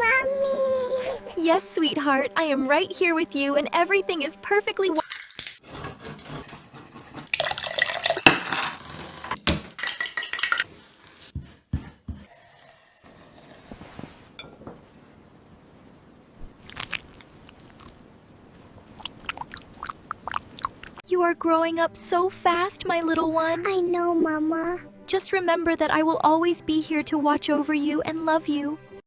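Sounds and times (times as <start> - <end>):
dishes and utensils clinking: 9.8 - 10.8, 14.3 - 14.8.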